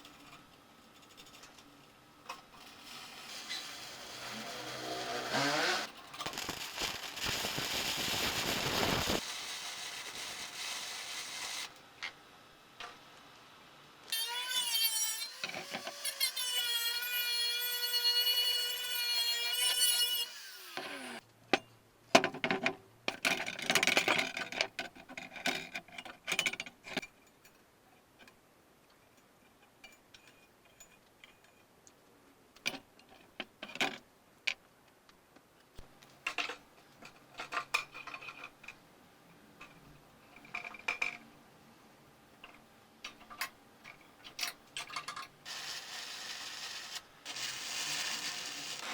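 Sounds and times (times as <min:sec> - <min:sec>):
rasping scraping tool work: 0:02.6 - 0:05.9.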